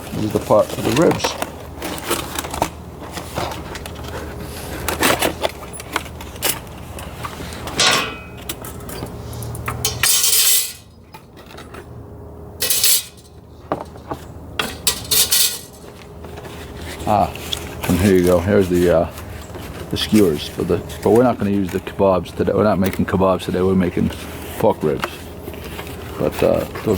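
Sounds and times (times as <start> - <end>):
rustling scrapes: 0.1 - 11.7, 14.0 - 21.9, 23.5 - 26.9
metal pieces clinking: 7.7 - 11.7, 12.6 - 13.3, 14.6 - 15.8.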